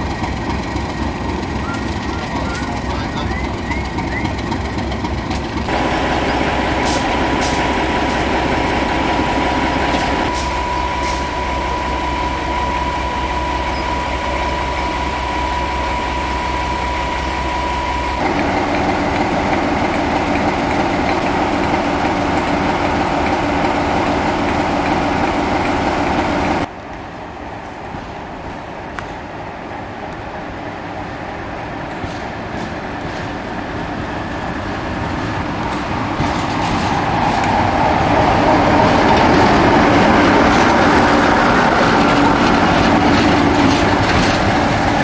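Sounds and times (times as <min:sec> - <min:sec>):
train running: 0:00.0 - 0:45.0
steady high tone: 0:05.7 - 0:18.2.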